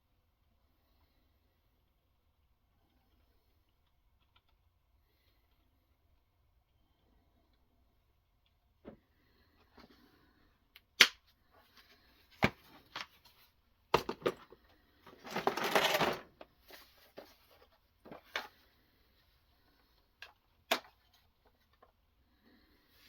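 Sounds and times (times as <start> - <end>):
clicks and knocks of handling: 12.4 - 14.6.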